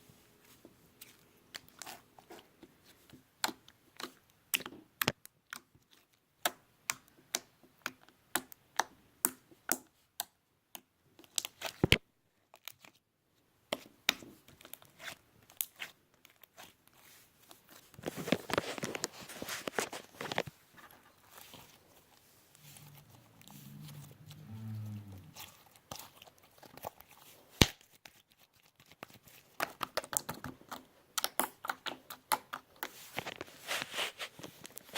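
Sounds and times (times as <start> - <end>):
slime squelching: 13.7 - 20.4, 21.0 - 34.9.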